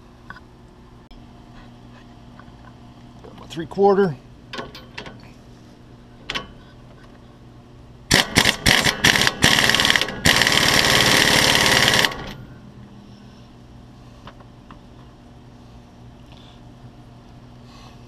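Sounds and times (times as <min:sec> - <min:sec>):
pneumatic impact wrench hammering: 0:08.1 - 0:12.4.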